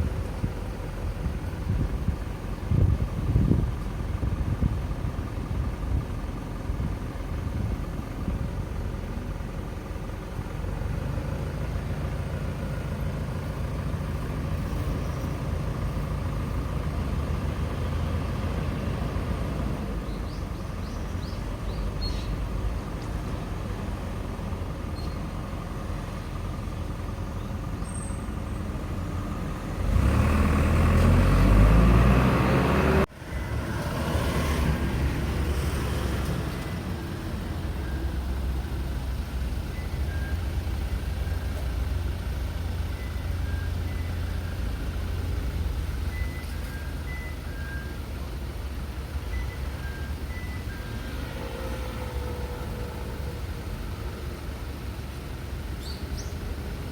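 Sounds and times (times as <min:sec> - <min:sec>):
road traffic rumble: 0:00.0 - 0:56.9
heavy vehicle passing: 0:28.6 - 0:39.6.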